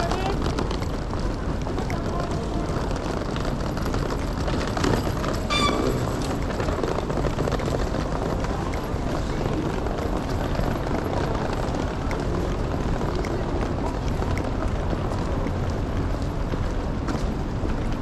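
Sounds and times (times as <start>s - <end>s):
low traffic rumble: 0.0s - 18.0s
short high-pitched tone: 5.5s - 6.1s.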